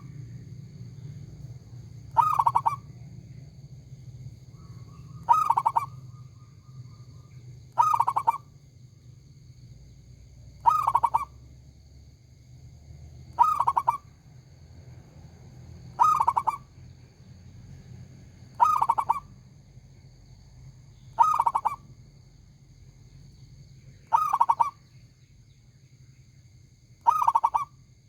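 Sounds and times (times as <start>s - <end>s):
steady low hum: 0.0s - 28.0s
dove cooing: 2.1s - 2.9s, 5.0s - 6.0s, 7.7s - 8.5s, 10.6s - 11.3s, 13.4s - 14.0s, 16.0s - 16.7s, 18.6s - 19.3s, 21.2s - 21.8s, 24.1s - 24.8s, 27.0s - 27.7s.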